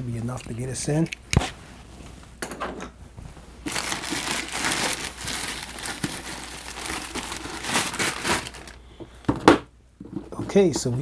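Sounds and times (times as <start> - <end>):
parcel packaging crinkling: 3.6 - 8.8.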